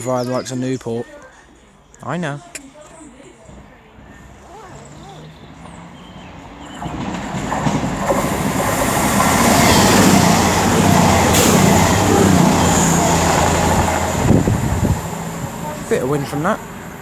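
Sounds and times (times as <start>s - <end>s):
diesel train passing fast: 3.4s - 17.0s.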